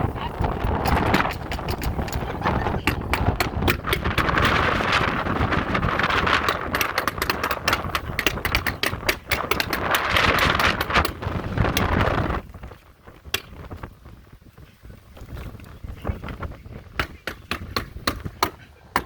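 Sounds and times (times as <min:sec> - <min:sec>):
wind buffeting microphone: 0:00.0 - 0:19.0
rapid crackling clicks: 0:00.4 - 0:12.4.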